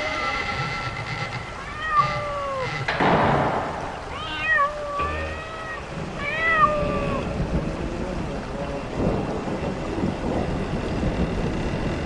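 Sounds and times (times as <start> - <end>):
cat meowing: 1.6 - 2.9, 4.0 - 7.4.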